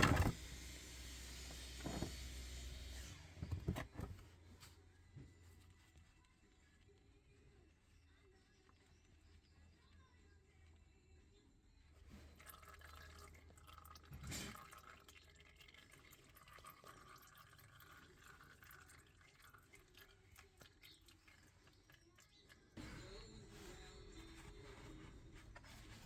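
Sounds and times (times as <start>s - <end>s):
oil dripping: 12.2s - 22.9s.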